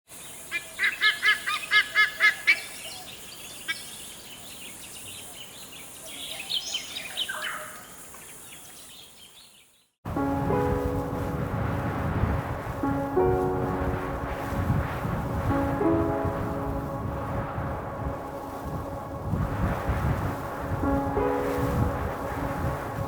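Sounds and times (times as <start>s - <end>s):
music: 10.1s - 23.0s.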